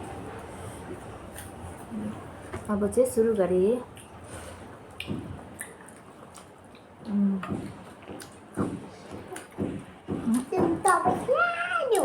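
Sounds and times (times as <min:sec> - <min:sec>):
wet chewing and lip smacks: 0:04.9 - 0:08.6
short hummed vocal sound: 0:07.0 - 0:07.5.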